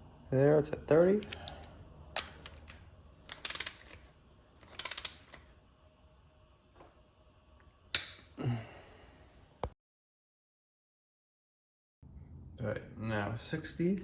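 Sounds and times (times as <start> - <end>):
torque wrench ratchet clicking: 3.3 - 4.0, 4.6 - 5.4.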